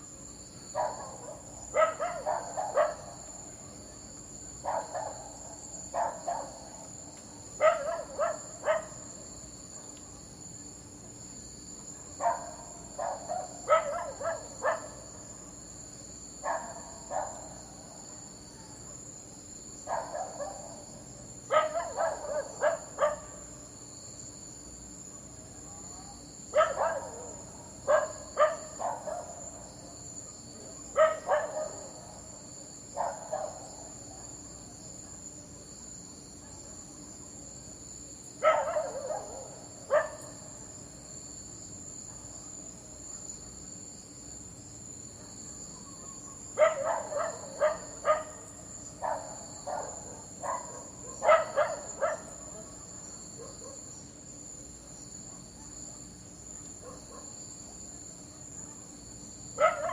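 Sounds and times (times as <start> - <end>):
crickets chirping: 0.0 - 59.9
dog barking: 0.7 - 3.2, 4.6 - 6.8, 7.6 - 9.1, 12.0 - 15.1, 16.4 - 17.7, 19.8 - 20.8, 21.5 - 23.5, 26.5 - 29.6, 30.2 - 32.3, 32.9 - 35.4, 36.4 - 36.8, 38.4 - 40.5, 45.2 - 54.0, 55.3 - 56.1, 56.8 - 57.4, 59.6 - 59.9.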